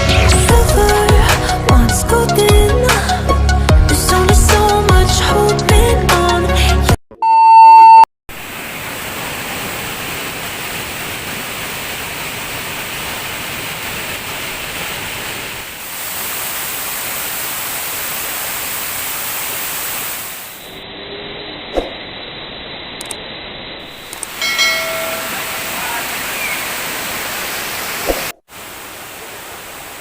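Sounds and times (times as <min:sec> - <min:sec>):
music: 0:00.0 - 0:07.0
loud electronic beep: 0:07.2 - 0:08.1
waterfall rushing: 0:08.4 - 0:20.6, 0:23.9 - 0:30.0.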